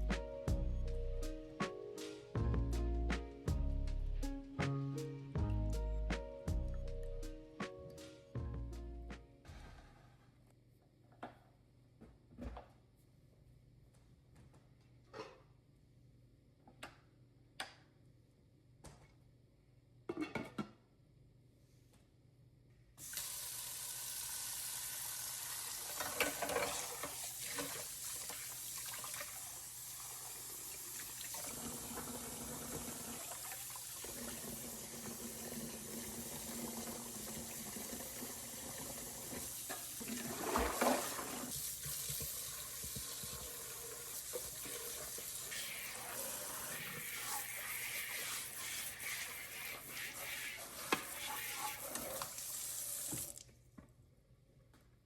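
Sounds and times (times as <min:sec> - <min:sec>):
water running: 0:23.0 - 0:53.5.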